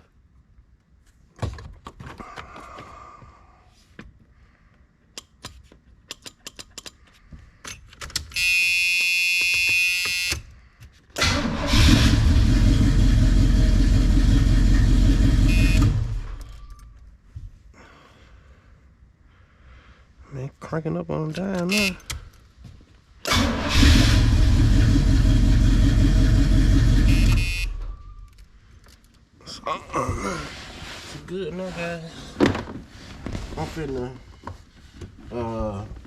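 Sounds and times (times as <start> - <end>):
car engine cranking and starting: 11.2 - 16.8, 23.3 - 28.3
steady buzzing tone: 27.0 - 28.2.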